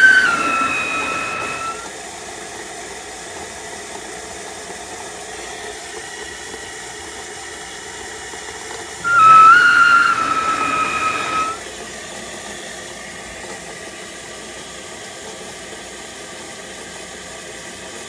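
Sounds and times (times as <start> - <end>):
pump high-pitched squeal: 0.0 - 1.9, 9.0 - 11.7.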